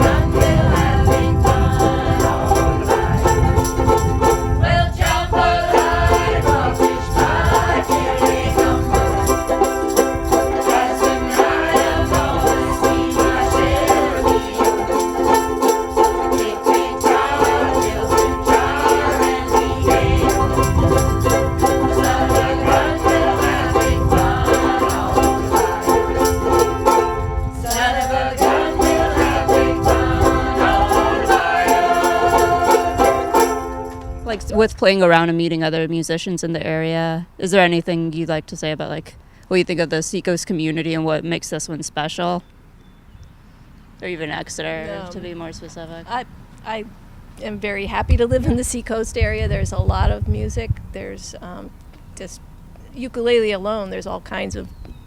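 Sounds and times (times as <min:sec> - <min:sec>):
people singing: 0:00.0 - 0:34.0
strummed ukuleles: 0:00.0 - 0:34.7.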